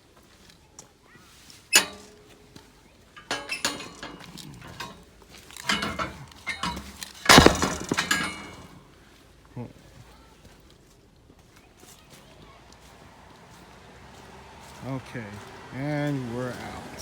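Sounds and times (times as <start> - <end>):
metal clanking and knocking: 1.7 - 2.4, 3.2 - 8.8.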